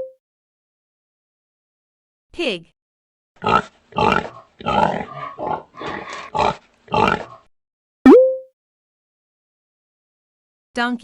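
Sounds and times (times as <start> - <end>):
pig grunting: 3.4 - 7.5.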